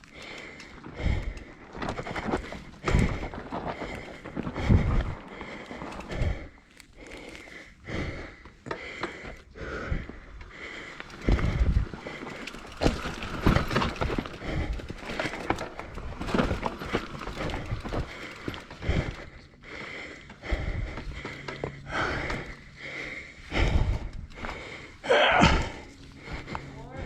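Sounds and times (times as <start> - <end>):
mountain bike knocks and rattles: 0.2 - 6.4, 11.0 - 19.3.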